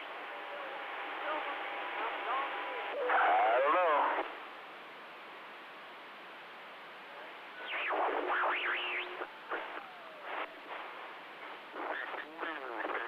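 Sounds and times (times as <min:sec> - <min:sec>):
radio static hiss: 0:00.0 - 0:13.0
short radio bursts: 0:07.6 - 0:11.1, 0:11.7 - 0:13.0
warbling radio signal: 0:07.6 - 0:13.0.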